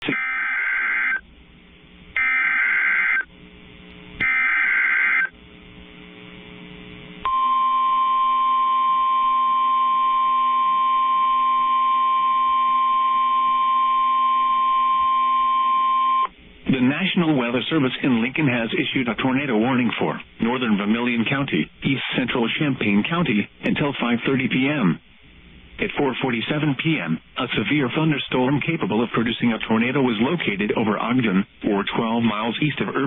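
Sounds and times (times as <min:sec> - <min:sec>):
steady attention tone: 0:07.2 - 0:17.8.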